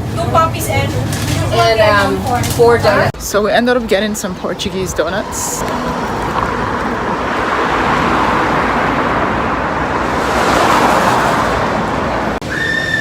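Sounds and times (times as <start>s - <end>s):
road traffic noise: 0.0s - 13.0s
car passing: 4.3s - 12.4s.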